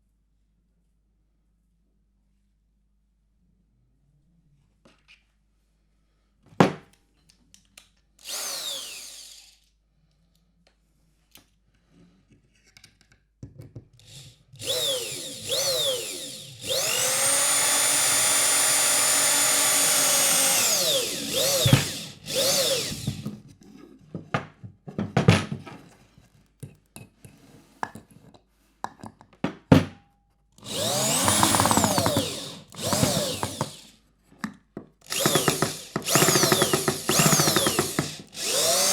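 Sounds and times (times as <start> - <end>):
electric screwdriver motor whirring: 8.2 - 9.6, 14.1 - 23.2, 30.6 - 33.9, 35.0 - 38.9.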